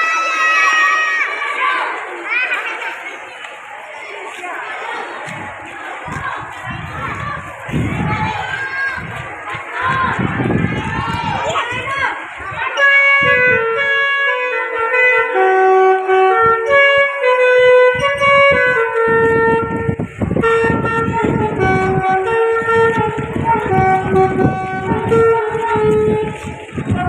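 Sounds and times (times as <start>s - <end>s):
air horns playing a tune: 11.7s - 27.0s.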